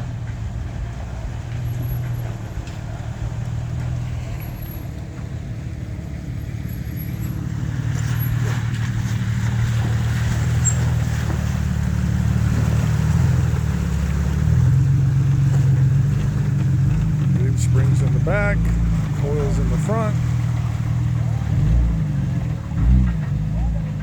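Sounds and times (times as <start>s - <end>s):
vehicle engine running: 0.0s - 24.0s
water rushing and splashing: 7.1s - 24.0s.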